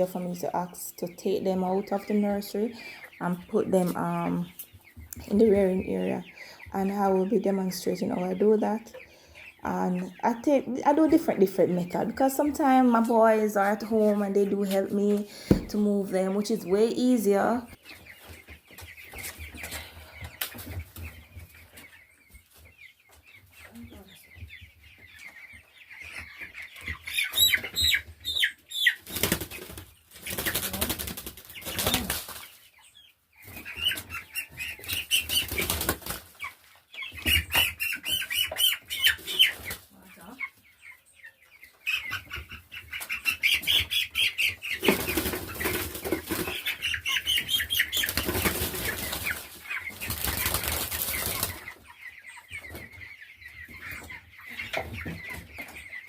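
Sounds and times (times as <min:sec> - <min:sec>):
chicks shrill peeping: 0:01.4 - 0:10.5, 0:16.4 - 0:56.0
chicks flapping wings: 0:26.8 - 0:32.6, 0:33.4 - 0:39.9, 0:42.0 - 0:52.0.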